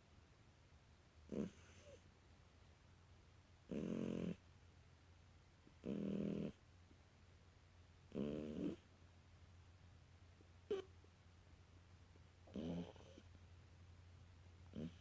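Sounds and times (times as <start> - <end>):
kitten snoring: 1.3 - 2.0, 3.7 - 4.4, 5.8 - 6.6, 8.1 - 8.9, 10.7 - 10.9, 12.5 - 13.3, 14.7 - 15.0.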